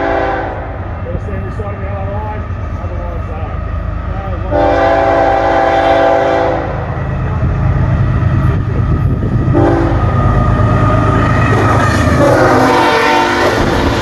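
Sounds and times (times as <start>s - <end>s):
locomotive air horn blast: 0.0s - 0.7s, 4.5s - 6.8s, 9.5s - 10.1s, 12.1s - 14.0s
train rumbling: 0.0s - 14.0s.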